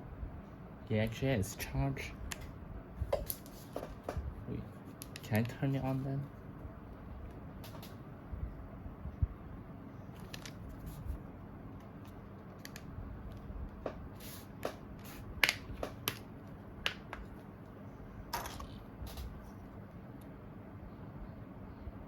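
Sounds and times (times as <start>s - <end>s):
smartphone handling clicks and taps: 16.9s - 17.4s.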